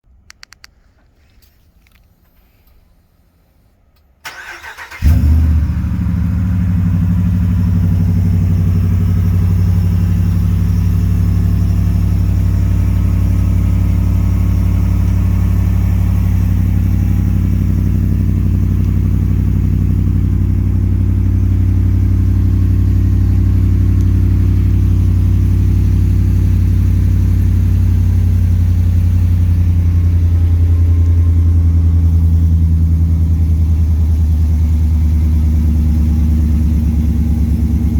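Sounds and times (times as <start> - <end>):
pickup engine starting and idling: 4.2 - 37.9.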